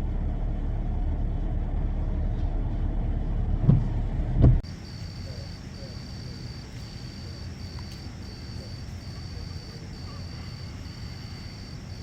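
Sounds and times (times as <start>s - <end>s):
low steady rumble: 0.0s - 12.0s
crickets trilling: 4.6s - 12.0s.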